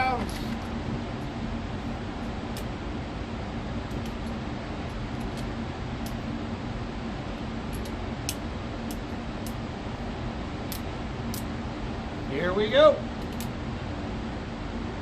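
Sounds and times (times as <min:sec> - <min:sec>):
ventilation fan hum: 0:00.0 - 0:15.0
revolver loading clicks: 0:13.2 - 0:13.5.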